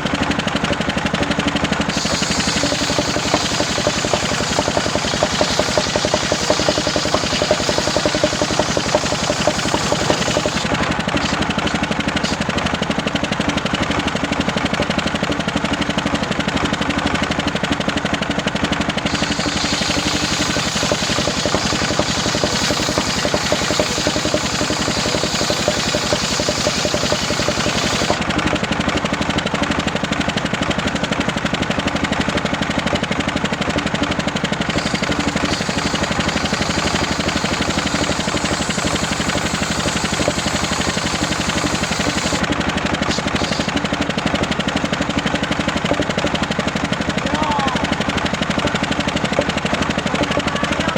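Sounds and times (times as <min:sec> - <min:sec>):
engine firing pulse: 0:00.0 - 0:15.6, 0:18.7 - 0:30.4, 0:34.0 - 0:50.9
circular saw hissing: 0:01.9 - 0:12.5, 0:19.0 - 0:28.2, 0:34.7 - 0:43.9.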